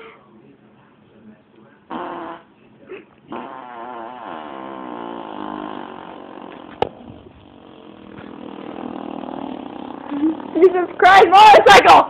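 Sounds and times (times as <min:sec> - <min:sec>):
person blowing lip buzz: 0:01.9 - 0:02.5, 0:03.3 - 0:10.9.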